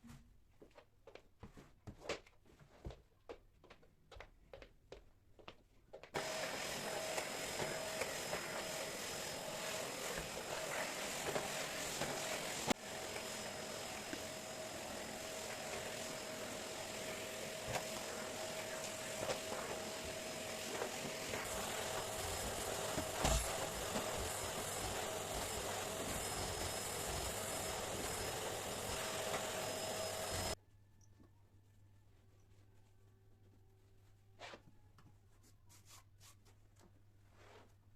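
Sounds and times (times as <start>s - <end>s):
vacuum cleaner running: 6.2s - 30.6s.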